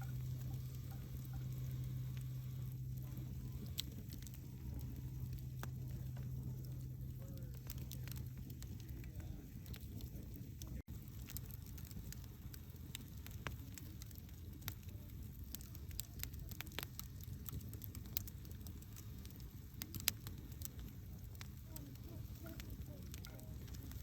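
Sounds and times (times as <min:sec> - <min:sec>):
burning logs crackling and popping: 0:00.0 - 0:24.0
low rumble of flames: 0:00.0 - 0:24.0.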